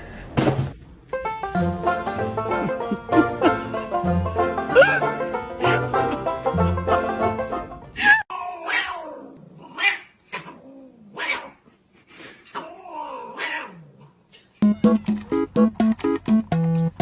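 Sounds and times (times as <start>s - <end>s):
music with short notes: 1.1s - 8.0s, 14.6s - 17.0s
cat yowling: 8.3s - 10.1s, 12.6s - 13.8s.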